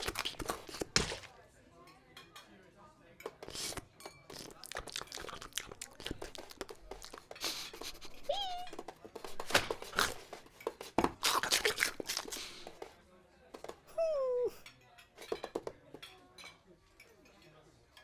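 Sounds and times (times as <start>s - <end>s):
cartoon cat meow: 8.3s - 8.8s.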